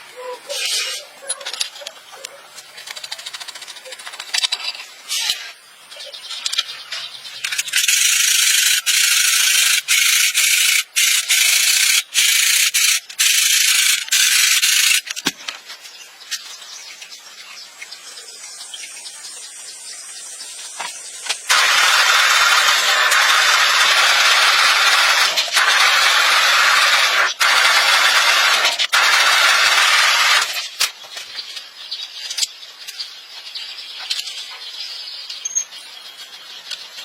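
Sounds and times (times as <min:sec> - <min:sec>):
loud steady hiss: 0:04.9 - 0:15.2, 0:15.8 - 0:31.8.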